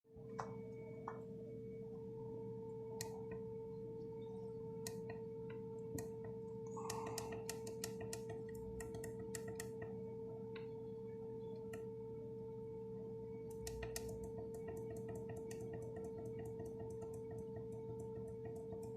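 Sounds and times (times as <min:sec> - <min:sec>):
faint electrical tone: 0:00.2 - 0:18.9
sharp clicks: 0:04.9 - 0:05.2, 0:06.8 - 0:09.9, 0:13.5 - 0:18.9.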